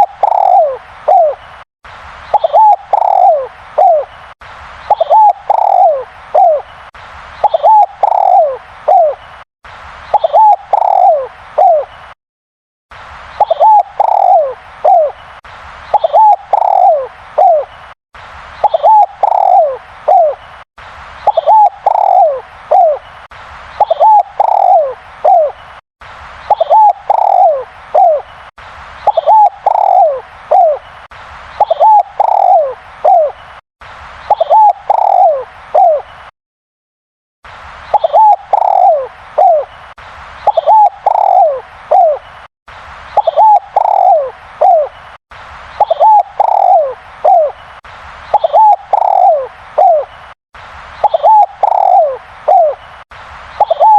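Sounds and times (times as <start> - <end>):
dove cooing: 0.0 - 1.4, 2.3 - 4.1, 4.9 - 6.7, 7.4 - 9.2, 10.1 - 11.9, 13.4 - 15.2, 16.0 - 17.7, 18.6 - 20.4, 21.3 - 23.0, 23.8 - 25.6, 26.5 - 28.2, 29.1 - 30.8, 31.6 - 33.4, 34.3 - 36.0, 38.0 - 39.7, 40.5 - 42.2, 43.2 - 44.9, 45.8 - 47.6, 48.4 - 50.1, 51.0 - 52.8, 53.6 - 53.9.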